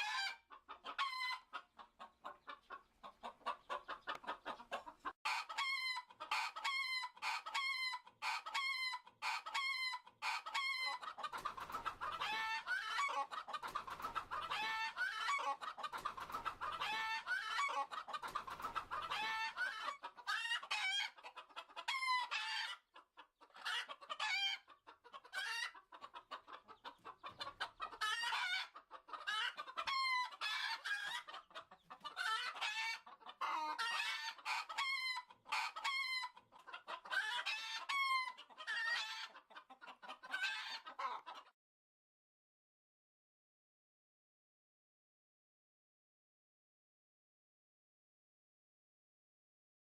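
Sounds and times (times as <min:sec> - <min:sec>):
chickens clucking: 0:00.0 - 0:41.6.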